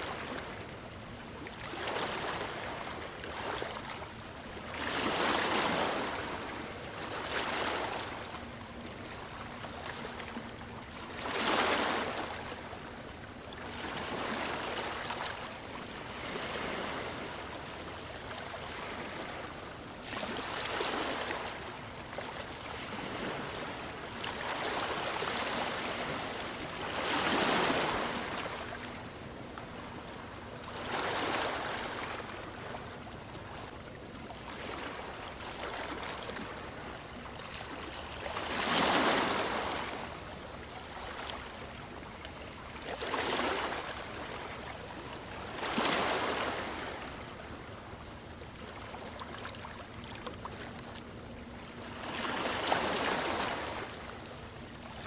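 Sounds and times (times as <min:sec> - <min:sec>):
ocean waves breaking on beach: 0:04.6 - 0:08.6, 0:09.5 - 0:33.7, 0:34.4 - 0:47.5.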